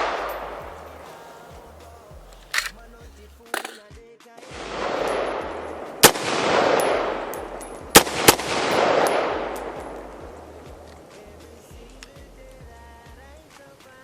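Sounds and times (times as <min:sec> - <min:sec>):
rifle shots: 0:02.3 - 0:03.9, 0:06.0 - 0:07.3, 0:07.9 - 0:09.9.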